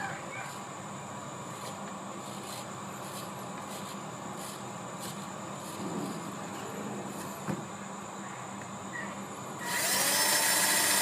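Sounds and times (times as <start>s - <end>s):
electric motor humming: 9.6s - 11.0s.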